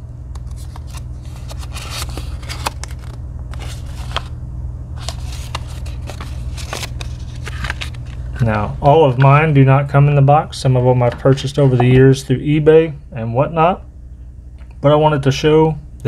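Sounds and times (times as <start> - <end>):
steady low hum: 0.0 - 16.0
paper crinkling: 0.4 - 4.3, 5.0 - 8.5.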